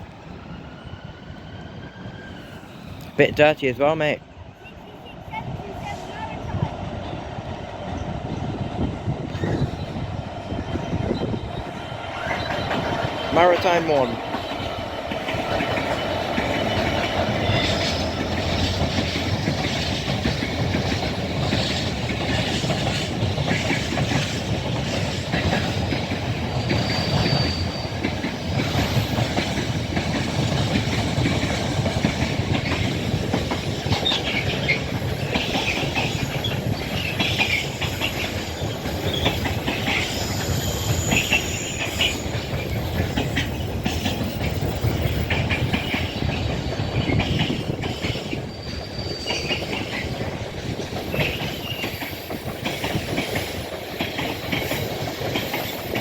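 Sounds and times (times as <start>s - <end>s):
train wheels clattering over joints: 7.8s - 56.0s
high-pitched wheel squeals: 26.6s - 28.1s, 38.1s - 43.8s, 48.3s - 49.9s.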